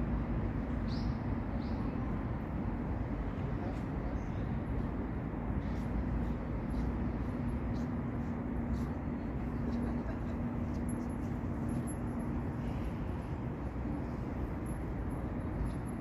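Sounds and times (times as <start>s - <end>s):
low outdoor background rumble: 0.0s - 16.0s
low steady hum: 0.0s - 16.0s.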